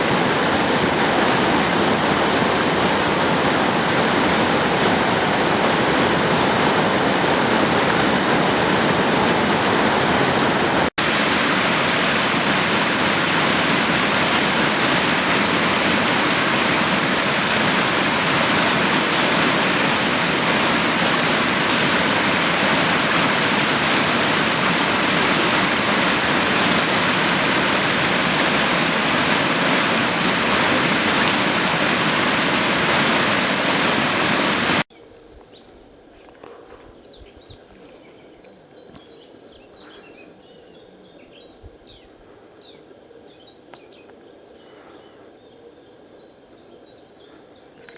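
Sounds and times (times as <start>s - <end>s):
floodwater rushing: 0.0s - 34.9s.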